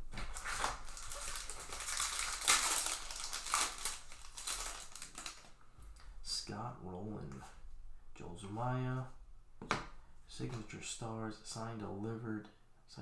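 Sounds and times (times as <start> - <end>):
plastic wrapper crinkling and tearing: 0.0 - 5.6.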